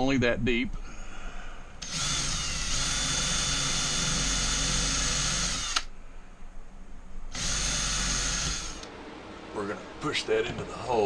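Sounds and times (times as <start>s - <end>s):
power drill whining: 1.8s - 5.9s, 7.3s - 8.9s.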